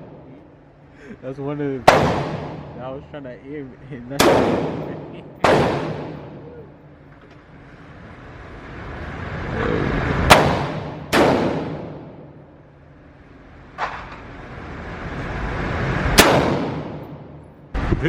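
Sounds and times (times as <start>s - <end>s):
gunshots with echo: 1.8s - 2.9s, 4.2s - 6.6s, 10.3s - 12.5s, 16.2s - 17.4s
rising rush of noise: 14.0s - 16.2s.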